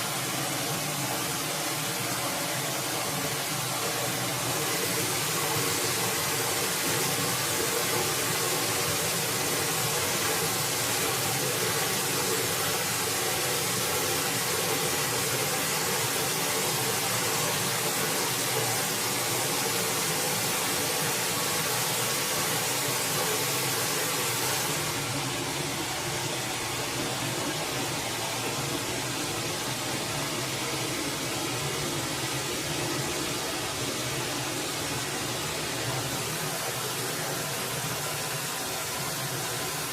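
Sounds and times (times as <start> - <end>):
forest stream rushing: 0.0 - 39.9.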